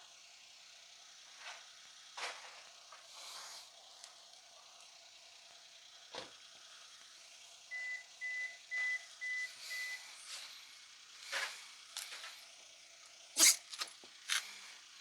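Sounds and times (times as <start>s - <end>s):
short electronic beeps: 7.7s - 10.0s.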